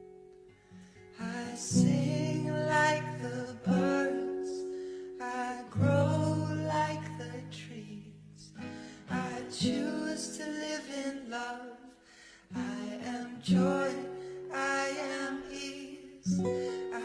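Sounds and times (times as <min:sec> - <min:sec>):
acoustic guitar: 0:00.0 - 0:17.0
person singing: 0:01.1 - 0:17.0.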